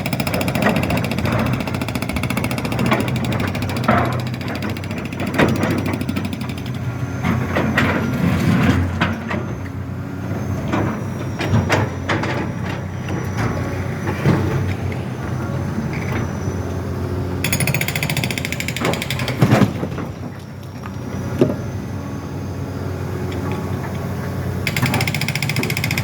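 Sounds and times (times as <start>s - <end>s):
machinery engine hum: 6.6s - 17.4s.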